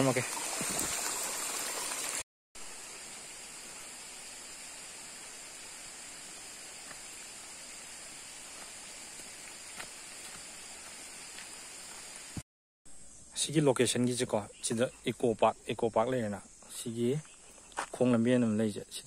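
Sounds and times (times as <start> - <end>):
stream water rushing: 0.0 - 2.2.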